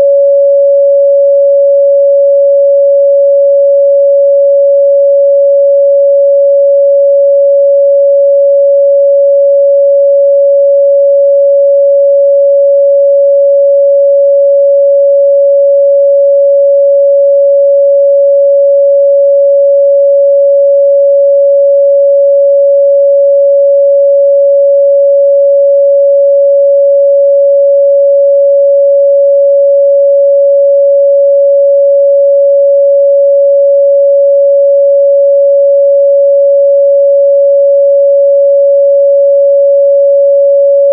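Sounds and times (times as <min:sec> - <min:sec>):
sine-wave test tone: 0:00.0 - 0:40.9.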